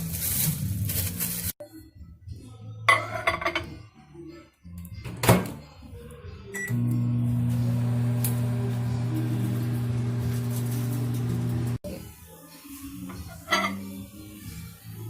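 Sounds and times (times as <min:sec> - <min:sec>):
short microwave beep: 0:06.6 - 0:06.9
microwave oven humming: 0:06.6 - 0:11.8.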